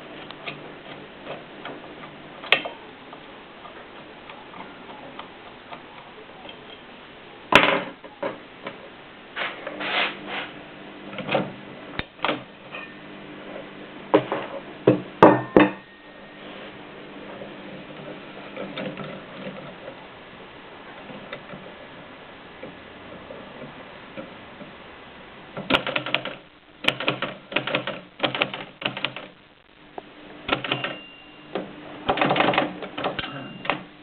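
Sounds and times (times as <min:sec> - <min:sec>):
typewriter clacks: 0:25.6 - 0:29.3, 0:30.5 - 0:31.0, 0:32.1 - 0:33.8.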